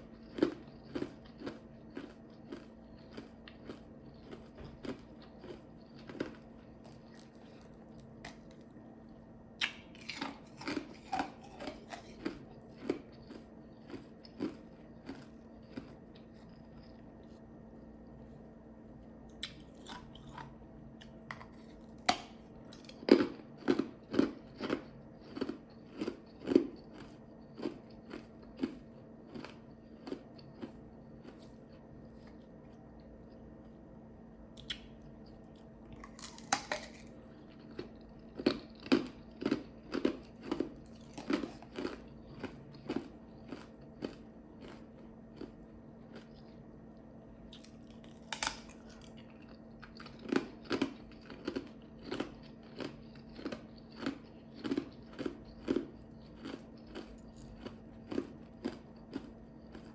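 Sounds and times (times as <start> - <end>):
ice crunching in mouth: 35.9 - 44.8.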